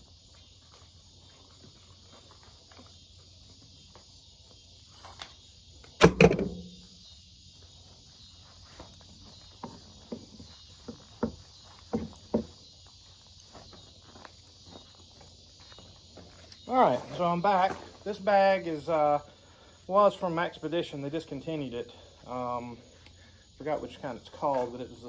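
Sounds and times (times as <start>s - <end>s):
high insect chorus: 0.0s - 25.0s
loud ringing double bang: 6.0s - 6.9s.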